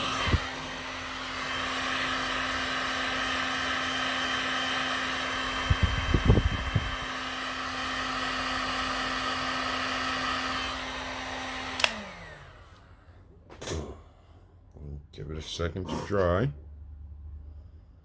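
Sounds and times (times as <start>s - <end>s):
heat gun fan whirring: 0.0s - 14.2s
heat gun switch click: 11.7s - 12.1s.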